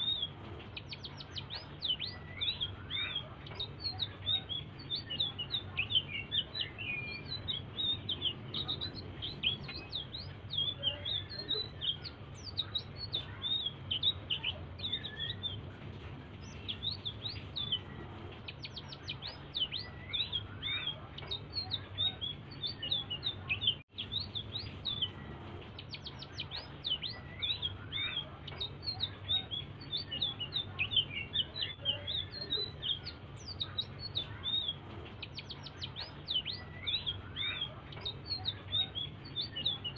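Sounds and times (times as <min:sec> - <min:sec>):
songbird chattering song: 0:00.0 - 0:39.9
steady low hum: 0:00.0 - 0:39.9.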